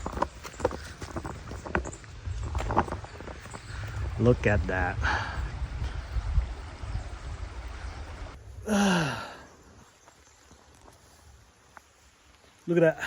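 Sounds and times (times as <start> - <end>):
man sighing: 8.6 - 9.5.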